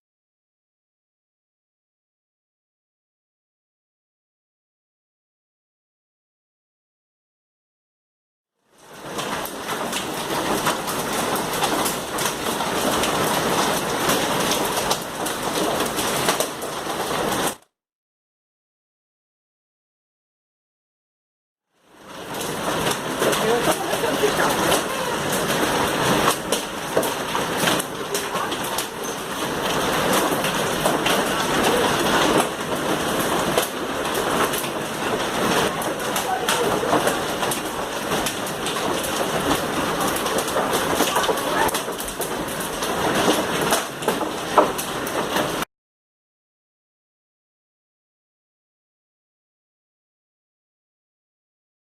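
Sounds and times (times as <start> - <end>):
hailstones pelting down: 8.7 - 17.6, 21.9 - 45.6.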